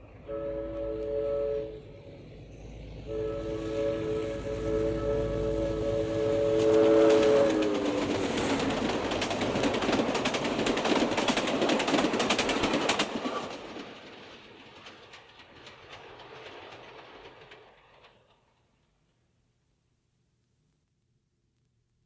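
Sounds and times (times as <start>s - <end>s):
train wheels clicking over rail joints: 6.6s - 19.1s.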